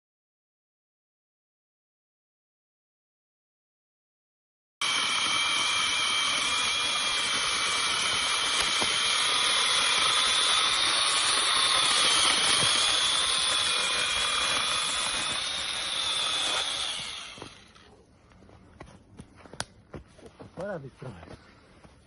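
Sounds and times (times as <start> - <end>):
electric chainsaw whining: 4.8 - 17.9.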